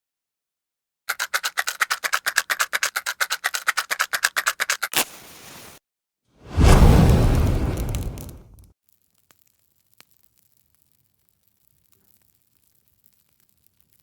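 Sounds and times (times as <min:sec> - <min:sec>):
rapid even rattle: 0:01.1 - 0:04.9
match struck hissing: 0:04.9 - 0:05.8, 0:06.5 - 0:08.7
fire whoosh: 0:06.4 - 0:08.7.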